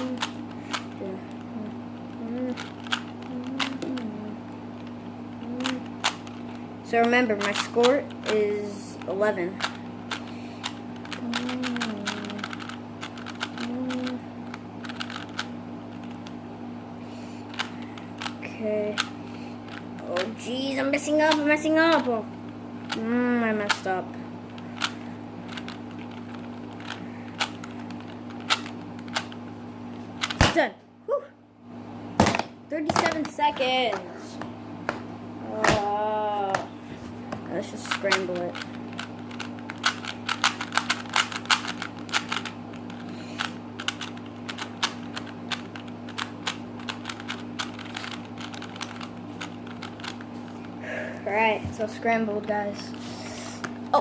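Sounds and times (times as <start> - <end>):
puzzle cube clicks: 0.0 - 16.3, 24.6 - 29.4, 37.8 - 50.2.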